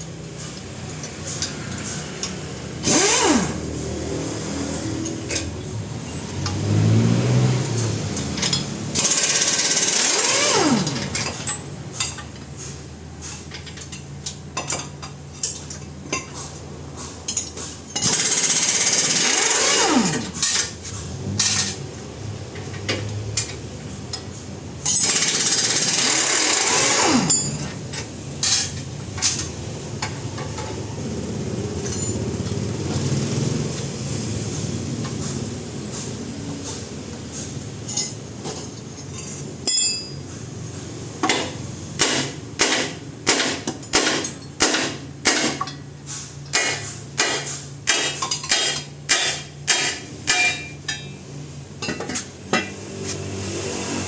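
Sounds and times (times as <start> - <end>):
power tool whining: 2.8 - 3.8, 8.9 - 11.3, 18.0 - 20.6, 25.0 - 27.7.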